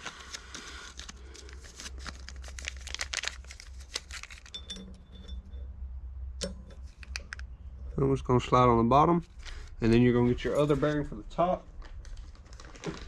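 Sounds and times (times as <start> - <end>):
rustling and crinkling packaging: 0.0 - 4.8, 9.2 - 13.0.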